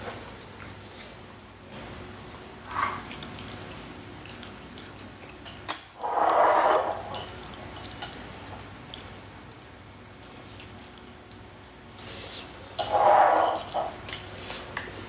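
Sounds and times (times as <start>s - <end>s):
noisy watery sound: 0.0s - 15.0s
chopsticks and bowls clinking: 12.7s - 14.1s.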